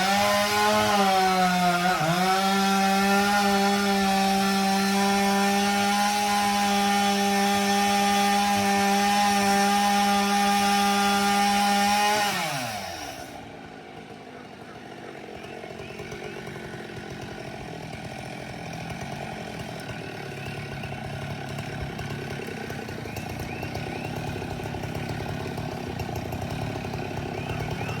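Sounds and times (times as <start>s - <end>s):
chainsaw running at high pitch: 0.0s - 28.0s
low engine sound: 26.7s - 28.0s.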